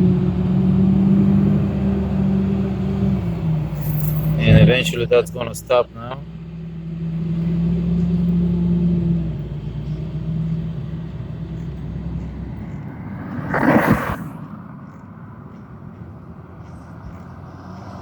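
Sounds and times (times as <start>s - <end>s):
vehicle engine humming: 0.0s - 18.0s
loud rush of noise: 12.4s - 14.7s.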